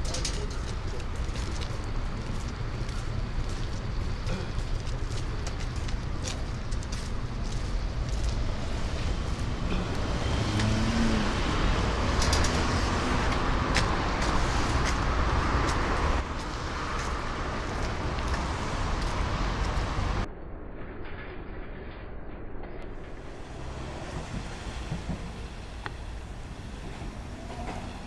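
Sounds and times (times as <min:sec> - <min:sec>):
cars passing: 0:00.0 - 0:20.3, 0:23.0 - 0:28.0
street traffic: 0:00.0 - 0:21.2, 0:22.2 - 0:28.0
sharp clicks and knocks: 0:12.1 - 0:15.0.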